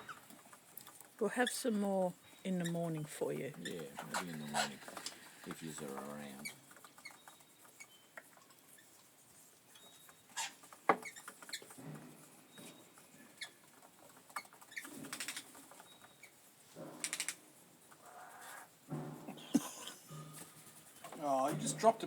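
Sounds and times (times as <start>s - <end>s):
parrot beak clicks and nibbling: 17.0s - 17.4s.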